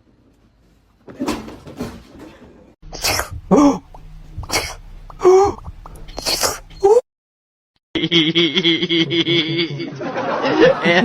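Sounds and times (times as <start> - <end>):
pet sneezing: 3.0 - 3.4, 4.4 - 7.0.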